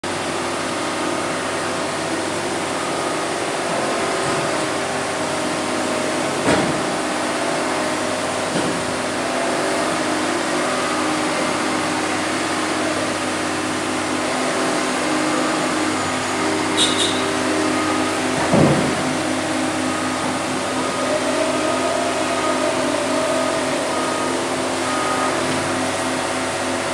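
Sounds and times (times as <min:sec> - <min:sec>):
excavator diesel engine running: 0:00.0 - 0:26.9.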